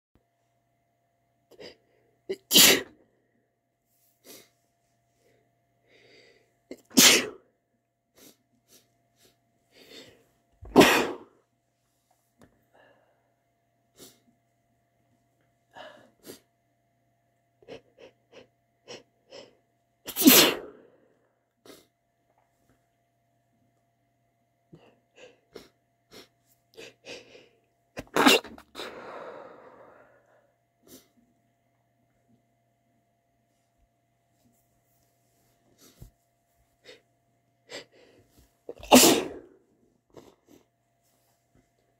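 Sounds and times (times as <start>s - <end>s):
person sneezing: 2.3s - 3.0s, 6.7s - 7.4s, 10.6s - 11.3s, 20.1s - 20.9s, 28.0s - 29.2s, 38.7s - 39.6s
breath in: 28.8s - 31.1s.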